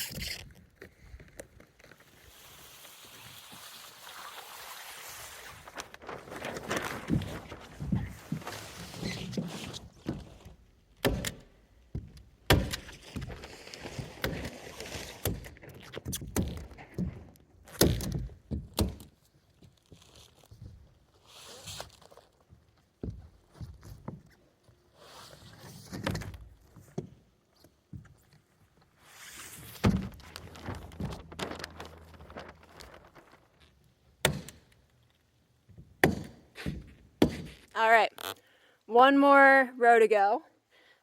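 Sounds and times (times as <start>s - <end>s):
shuffling and scraping: 1.5s - 10.5s, 27.6s - 33.9s.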